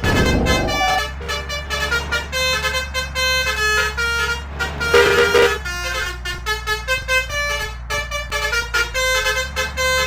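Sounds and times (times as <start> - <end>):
loud low rumble: 0.0 - 3.6
musical air horns playing: 0.7 - 6.4.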